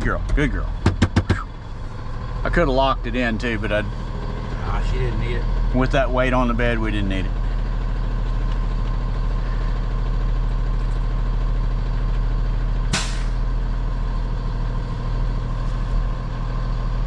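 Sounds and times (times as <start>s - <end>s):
diesel truck engine idling: 0.0s - 17.0s
air release hiss: 12.9s - 13.4s.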